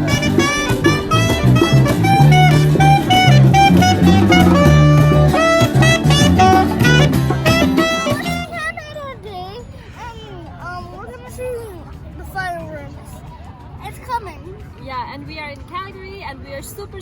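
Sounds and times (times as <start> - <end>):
upbeat jazzy music: 0.0 - 8.6.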